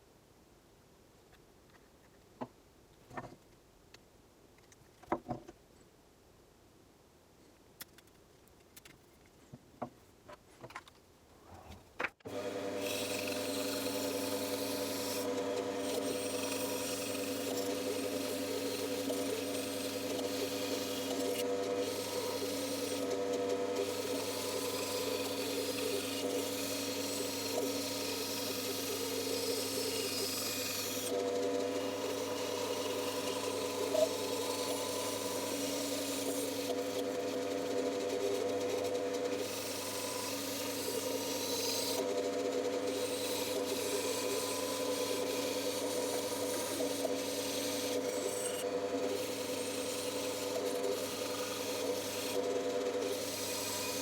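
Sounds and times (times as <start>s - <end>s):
blade cutting wood: 12.2s - 54.0s
bandsaw humming: 12.3s - 54.0s.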